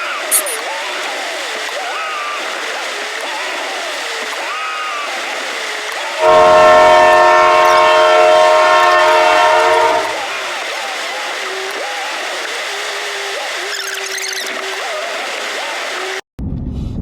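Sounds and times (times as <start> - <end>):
horn sounding a chord: 6.2 - 10.6.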